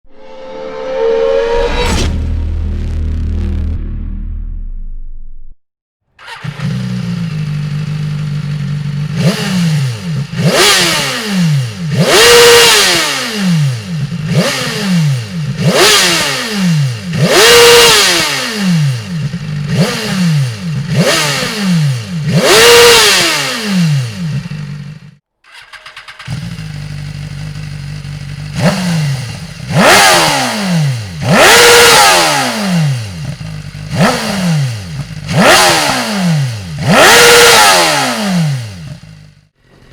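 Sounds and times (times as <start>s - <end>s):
motorcycle engine idling: 6.2s - 12.3s, 19.0s - 23.3s, 24.0s - 30.3s, 33.0s - 37.4s, 38.6s - 39.9s
motorcycle engine revving: 6.2s - 39.9s.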